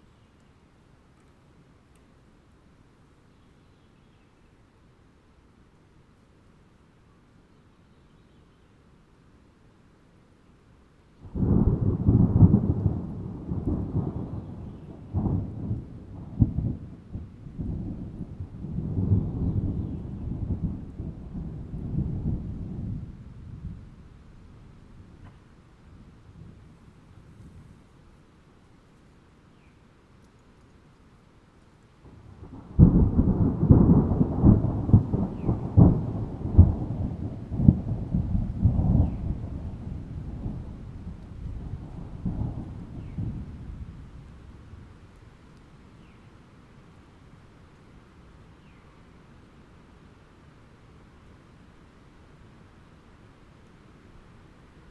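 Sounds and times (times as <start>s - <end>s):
thunder rumbling: 11.3s - 25.2s, 32.1s - 45.2s
sharp thunder clap: 32.5s - 43.9s.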